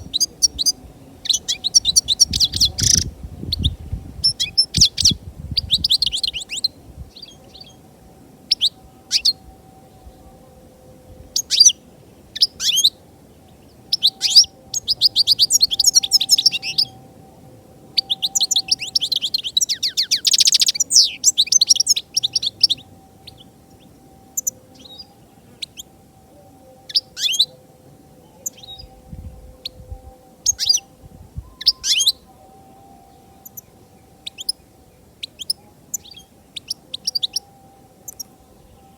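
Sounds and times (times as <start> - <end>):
goldfinch twittering: 18.0 - 25.9, 31.5 - 32.2.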